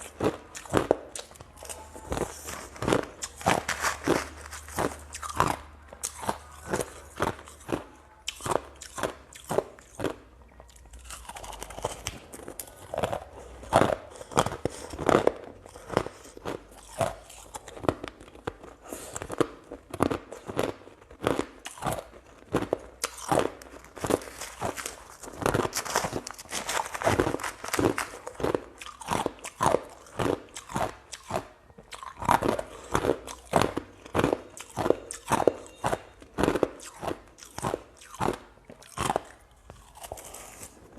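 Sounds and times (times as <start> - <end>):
crisp crunching: 0.0 - 40.9.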